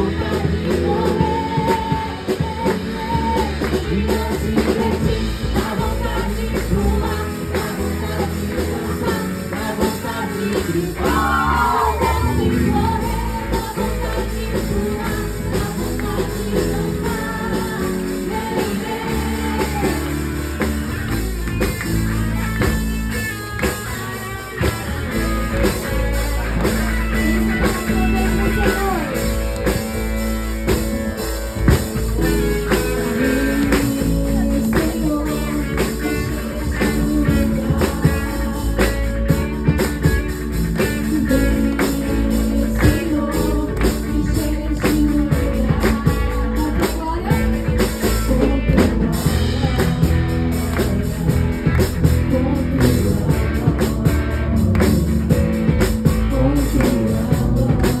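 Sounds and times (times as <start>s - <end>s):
person singing: 0.0s - 22.0s, 23.7s - 58.0s
drum kit: 0.0s - 58.0s
guitar: 0.0s - 58.0s.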